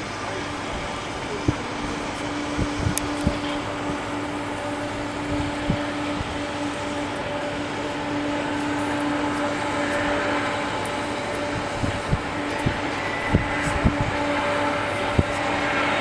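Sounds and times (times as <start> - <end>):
jet airliner engines running: 0.0 - 16.0
wind thumps on microphone: 1.4 - 4.1, 5.2 - 6.4, 11.5 - 14.4.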